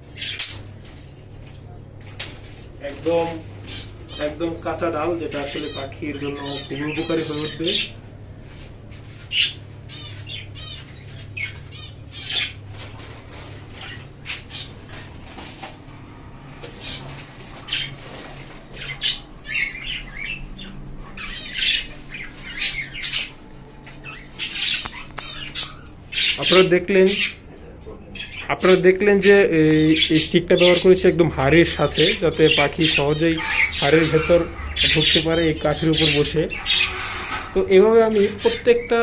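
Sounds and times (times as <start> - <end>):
budgerigars squawking and chattering: 0.0 - 1.1, 2.2 - 39.0
steady low hum: 0.0 - 39.0
wings fluttering: 8.5 - 20.1, 32.0 - 38.9.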